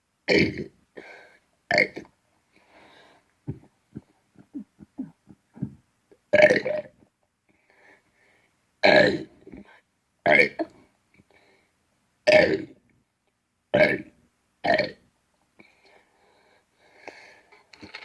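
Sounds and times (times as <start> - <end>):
person burping: 0.3 - 0.7, 1.7 - 2.1, 3.5 - 7.0, 8.8 - 9.3, 10.3 - 10.7, 12.3 - 12.8, 13.8 - 15.0.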